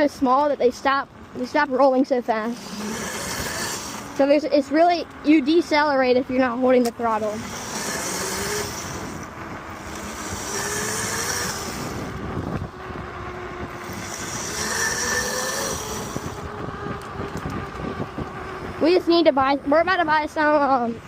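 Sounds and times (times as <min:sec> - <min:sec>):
electric motor whining: 0:00.7 - 0:21.0
wind noise on microphone: 0:05.4 - 0:21.0.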